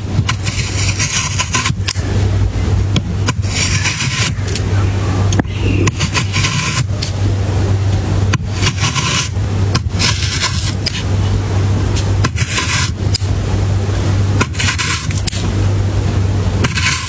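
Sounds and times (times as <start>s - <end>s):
steady low hum: 0.0s - 17.0s
frozen fruit crunching: 0.3s - 2.1s, 3.3s - 4.7s, 5.6s - 7.2s, 8.4s - 11.1s, 14.2s - 15.6s.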